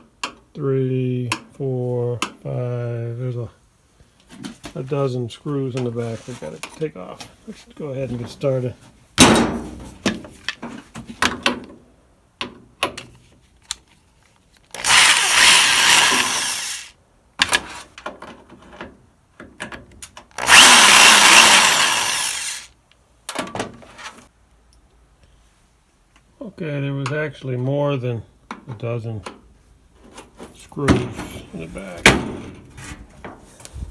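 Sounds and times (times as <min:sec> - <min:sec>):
power drill backing out screws: 0:14.7 - 0:16.9, 0:20.4 - 0:22.7.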